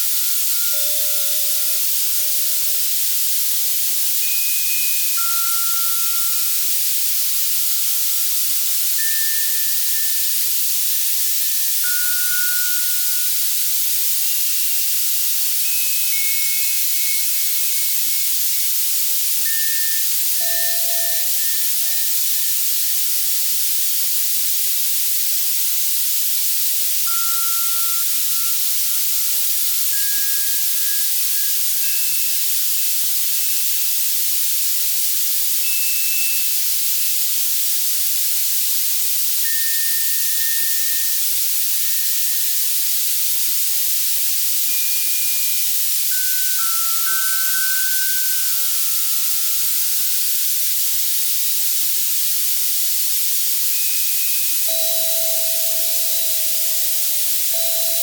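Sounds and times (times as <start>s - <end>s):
synthesizer white-noise hiss: 0.0s - 58.0s
echoing synthesized bell notes: 0.5s - 3.1s, 54.7s - 58.0s.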